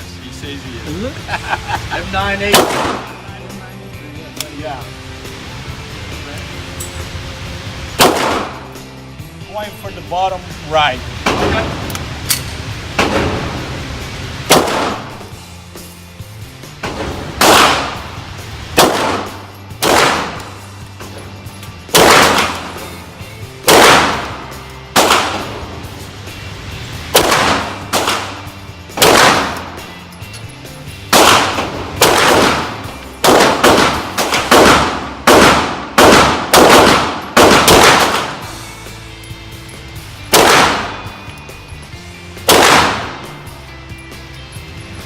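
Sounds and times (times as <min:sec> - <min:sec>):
pistol shots with echo: 0:02.5 - 0:03.2, 0:08.0 - 0:08.8, 0:14.5 - 0:15.3, 0:16.8 - 0:18.1, 0:18.8 - 0:20.6, 0:21.9 - 0:23.0, 0:23.6 - 0:25.6, 0:27.1 - 0:29.9, 0:31.1 - 0:38.6, 0:40.3 - 0:41.1, 0:42.4 - 0:43.4.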